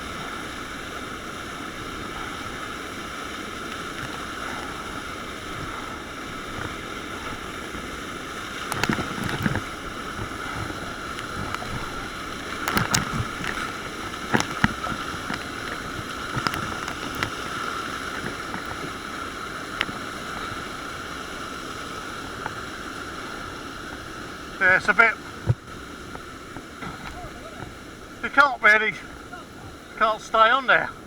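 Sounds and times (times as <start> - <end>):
whitewater rushing on river: 0.0 - 31.0
splashes and knocks: 3.6 - 20.5, 25.2 - 28.5.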